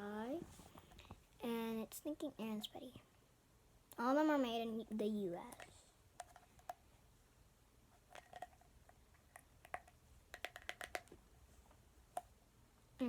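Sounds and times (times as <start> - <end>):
plastic container clicks and taps: 9.4 - 11.2.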